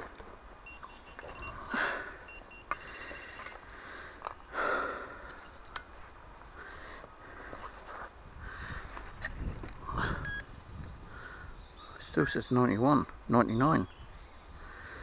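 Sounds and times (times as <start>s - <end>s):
metal detector high beeps: 0.6s - 1.6s, 2.3s - 3.6s, 10.2s - 10.5s.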